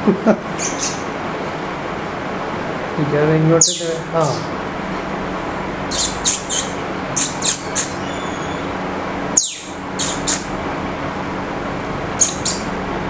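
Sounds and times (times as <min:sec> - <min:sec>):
low background hum: 0:00.0 - 0:13.0
bird chirping: 0:00.6 - 0:01.1, 0:03.6 - 0:04.5, 0:05.9 - 0:08.8, 0:09.4 - 0:10.5, 0:12.2 - 0:12.8.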